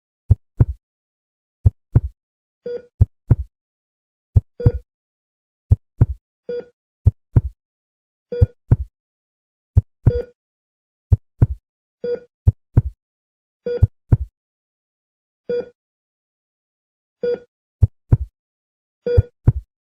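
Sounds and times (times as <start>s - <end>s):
heartbeat thumps: 0.3s - 0.8s, 1.6s - 2.2s, 3.0s - 3.5s, 4.4s - 4.8s, 5.7s - 6.2s, 7.4s - 7.6s, 8.4s - 8.9s, 9.8s - 10.3s, 11.1s - 11.6s, 12.5s - 13.0s, 13.8s - 14.3s, 17.8s - 18.3s, 19.2s - 19.7s.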